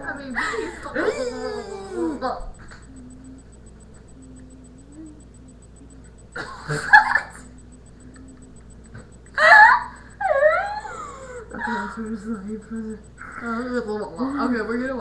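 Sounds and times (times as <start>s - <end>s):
person moaning and whining: 1.0s - 2.2s, 9.4s - 11.9s.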